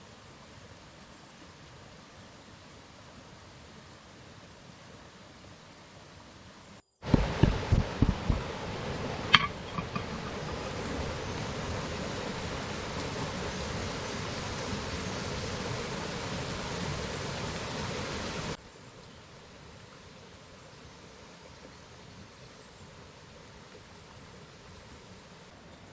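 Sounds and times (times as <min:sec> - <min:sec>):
steady rushing noise: 0:07.0 - 0:18.6
knocks: 0:07.1 - 0:10.3.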